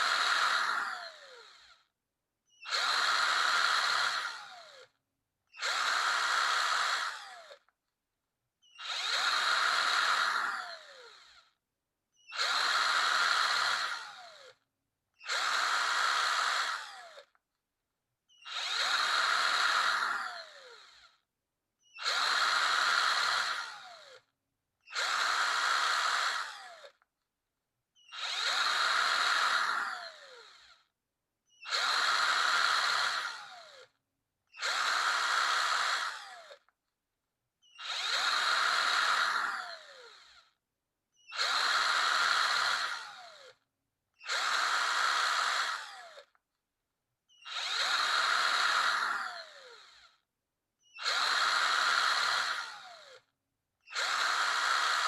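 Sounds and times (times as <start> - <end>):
electric drill whining: 0.0 - 1.9, 2.5 - 7.8, 8.6 - 11.6, 12.2 - 14.6, 15.2 - 17.4, 18.3 - 27.1, 28.0 - 30.9, 31.5 - 36.8, 37.6 - 40.6, 41.2 - 43.6, 44.2 - 46.4, 47.3 - 50.2, 50.8 - 53.3, 53.9 - 55.0.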